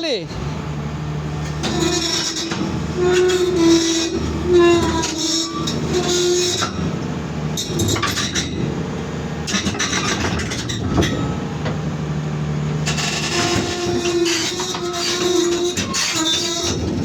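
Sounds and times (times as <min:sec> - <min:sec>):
excavator engine running: 0:00.0 - 0:17.0
metal track links clanking: 0:00.3 - 0:17.0.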